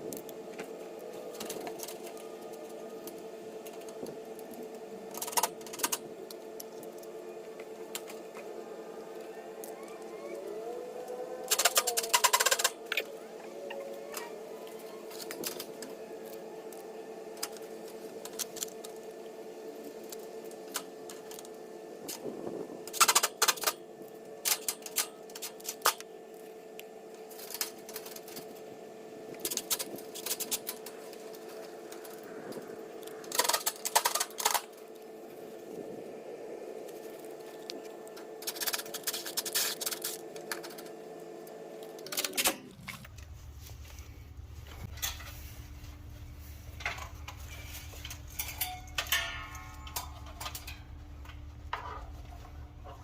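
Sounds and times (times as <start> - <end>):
steady hum: 0.0 - 53.0
metallic clicking and rattling: 46.8 - 52.1.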